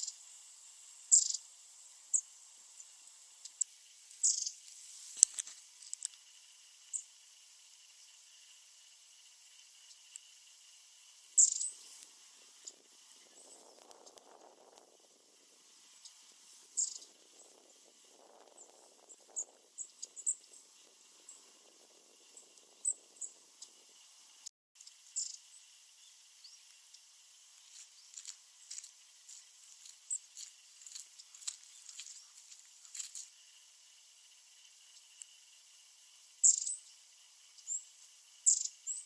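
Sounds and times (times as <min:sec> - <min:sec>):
small birds calling: 0:01.1 - 0:01.5, 0:02.1 - 0:04.6, 0:11.3 - 0:24.0, 0:24.8 - 0:33.3, 0:36.4 - 0:39.0.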